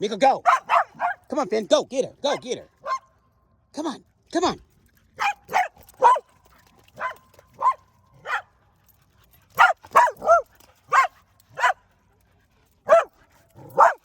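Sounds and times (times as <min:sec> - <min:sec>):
dog barking: 0:00.4 - 0:01.3, 0:02.3 - 0:03.1, 0:05.2 - 0:06.3, 0:07.0 - 0:08.5, 0:09.5 - 0:11.8, 0:12.8 - 0:14.0.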